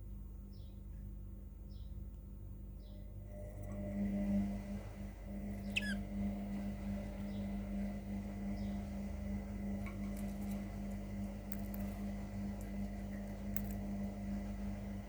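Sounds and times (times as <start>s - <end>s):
steady low hum: 0.0s - 15.0s
budgerigar chirp: 5.6s - 6.0s.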